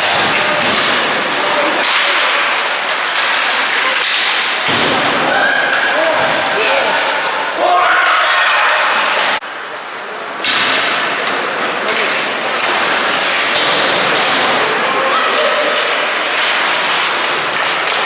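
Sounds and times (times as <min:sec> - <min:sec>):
hockey sticks and pucks knocking: 0:00.0 - 0:05.3, 0:10.3 - 0:18.0
crowd shouting: 0:05.1 - 0:09.4.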